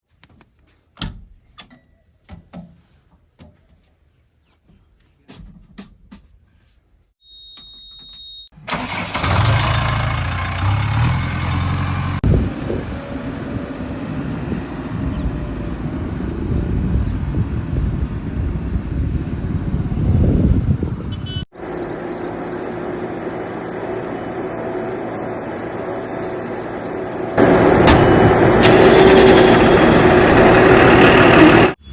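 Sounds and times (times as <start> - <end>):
short electronic beep: 7.2 - 8.5
diesel engine running: 8.7 - 19.9, 21.6 - 31.8.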